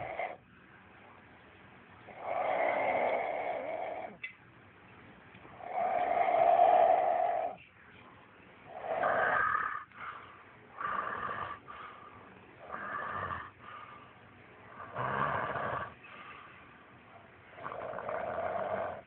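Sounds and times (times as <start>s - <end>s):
man snoring: 10.8s - 11.6s, 12.6s - 13.5s, 14.8s - 16.0s, 17.6s - 19.0s.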